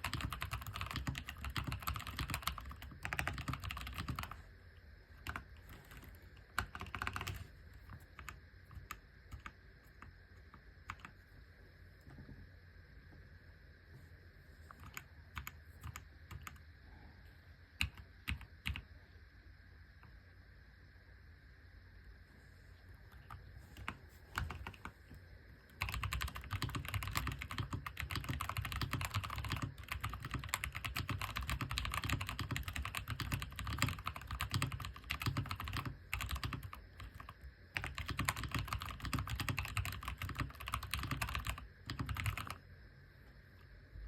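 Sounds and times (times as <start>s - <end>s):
mechanical keyboard typing: 0.0s - 4.4s, 5.2s - 10.0s, 10.9s - 11.2s, 14.8s - 16.6s, 17.8s - 18.8s, 23.1s - 24.9s, 25.8s - 42.6s.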